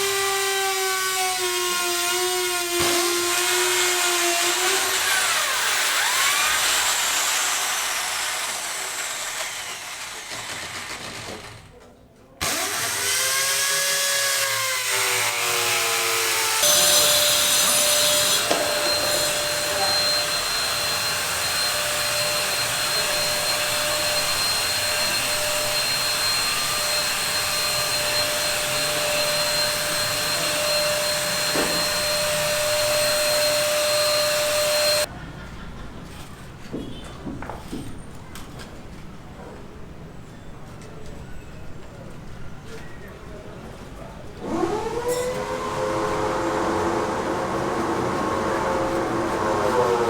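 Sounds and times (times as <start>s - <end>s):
power tool motor whining: 0.2s - 11.7s, 12.4s - 35.1s, 44.4s - 50.0s.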